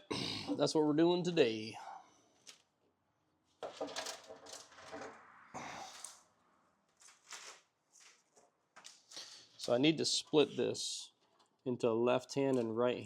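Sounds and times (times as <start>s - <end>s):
wires rustling and clicking: 2.3s - 2.8s, 3.5s - 11.7s.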